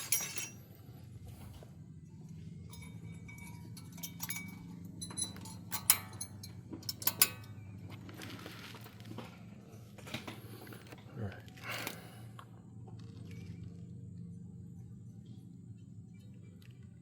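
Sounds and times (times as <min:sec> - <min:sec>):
metal parts clinking: 0:00.0 - 0:00.7, 0:02.7 - 0:07.8
steady low hum: 0:00.0 - 0:17.0.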